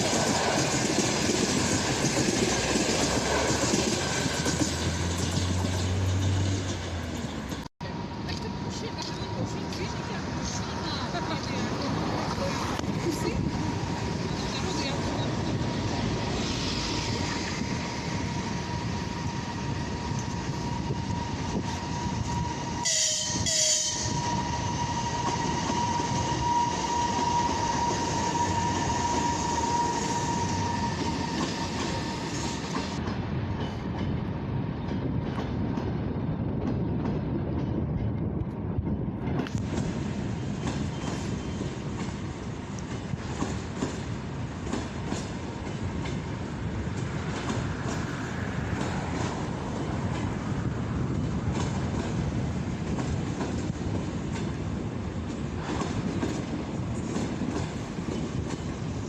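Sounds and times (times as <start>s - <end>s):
train wheels clicking over rail joints: 0.0s - 10.4s, 23.7s - 59.0s.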